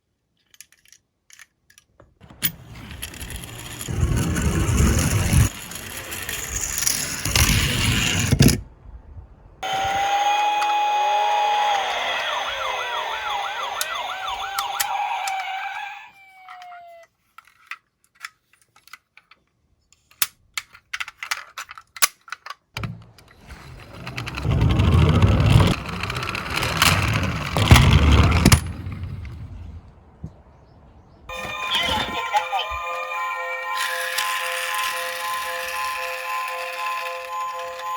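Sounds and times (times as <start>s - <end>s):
toy cars rolling down a slope: 0.4s - 8.6s, 9.6s - 19.4s, 23.2s - 29.6s, 33.7s - 37.9s
toy police car sirens wailing: 9.6s - 17.1s, 31.3s - 37.9s.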